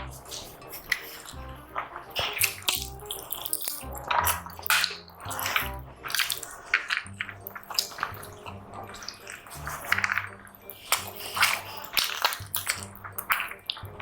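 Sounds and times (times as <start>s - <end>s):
background music with bass: 0.0s - 14.0s
wet chewing and smacking: 0.0s - 14.0s.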